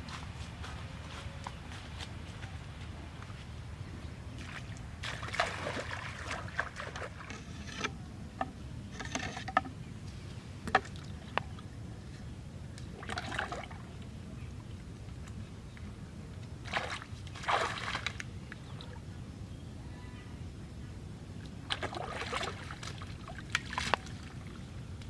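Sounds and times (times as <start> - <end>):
water splashing and trickling: 4.0 - 11.8, 12.8 - 15.8, 16.5 - 19.0, 21.6 - 25.0.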